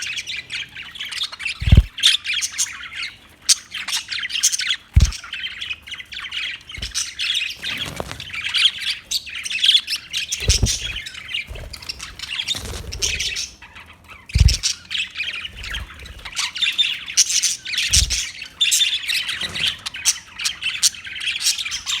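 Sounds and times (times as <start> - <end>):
budgerigars chattering and squawking: 0.0 - 22.0
short low thumps: 1.6 - 1.9, 5.0 - 5.2, 14.4 - 14.6.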